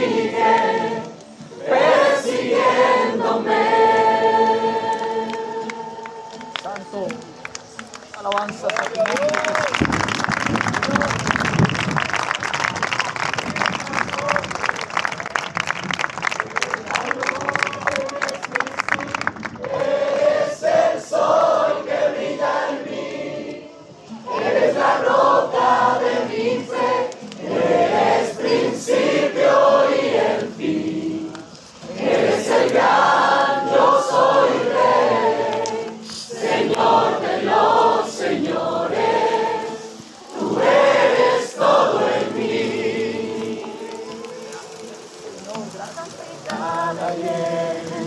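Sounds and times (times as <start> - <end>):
group singing a worship song: 0.0 - 6.9, 19.7 - 44.9, 46.4 - 48.0.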